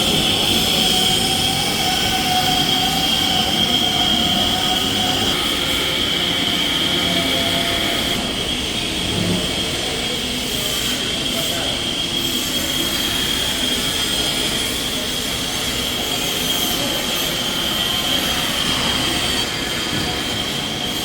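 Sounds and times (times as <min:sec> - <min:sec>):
lathe high-pitched whine: 0:00.0 - 0:21.0
machine noise: 0:00.0 - 0:21.0.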